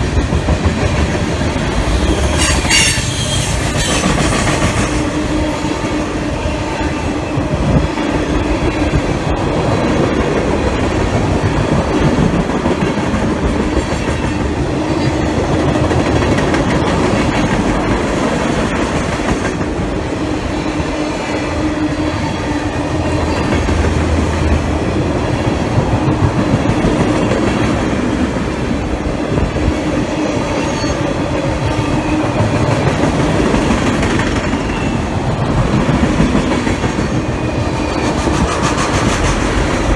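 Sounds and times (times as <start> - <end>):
train wheels clattering over rail joints: 0.0 - 5.4, 31.7 - 39.9.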